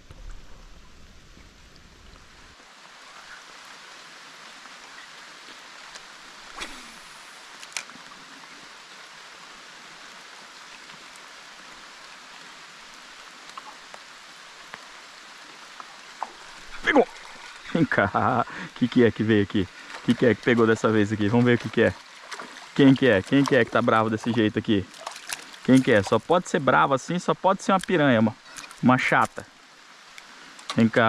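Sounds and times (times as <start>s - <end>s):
rain falling: 0.0s - 31.0s.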